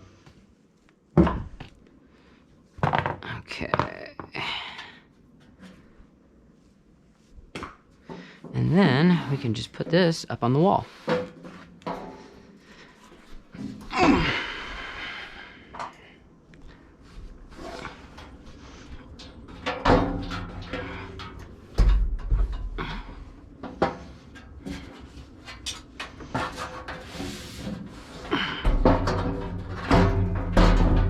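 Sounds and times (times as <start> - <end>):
metal rack knocks and clanks: 19.0 - 31.0.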